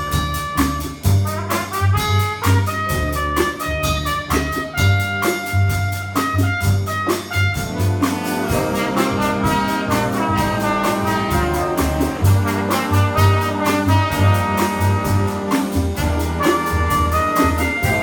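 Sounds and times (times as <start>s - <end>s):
drum kit strokes: 0.0s - 18.0s
trumpets and trombones: 0.0s - 18.0s
plucked bass line: 7.6s - 12.6s.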